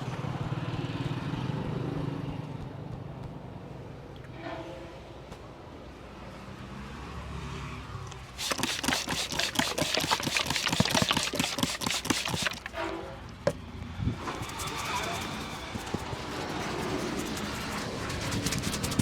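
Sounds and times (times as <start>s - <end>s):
street traffic rumble: 0.0s - 4.4s, 5.0s - 8.4s.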